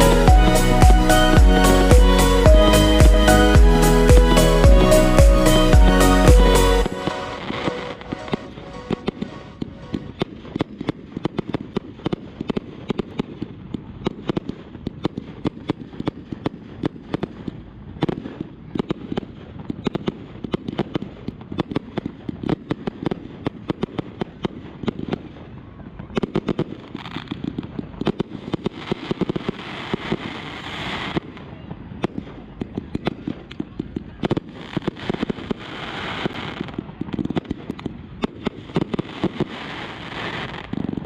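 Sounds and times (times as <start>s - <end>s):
fireworks bangs and pops: 6.8s - 41.0s.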